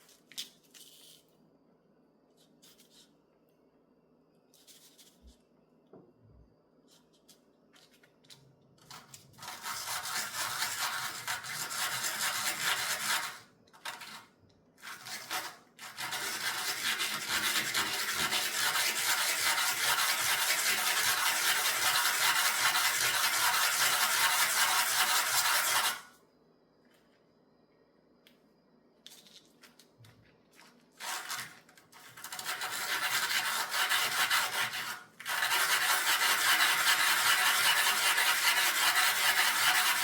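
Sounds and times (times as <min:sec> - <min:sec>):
sandpaper scratching: 0:15.1 - 0:26.0, 0:32.2 - 0:40.0.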